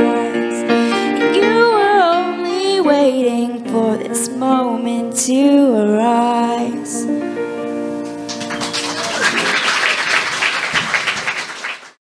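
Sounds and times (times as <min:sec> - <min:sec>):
audience clapping: 0:08.3 - 0:12.0.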